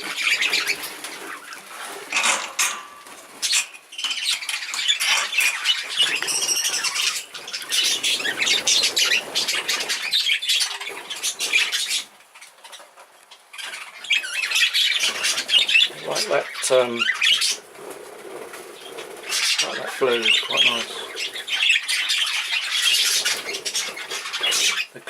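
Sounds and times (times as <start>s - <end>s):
budgie wingbeats: 0.0s - 25.0s.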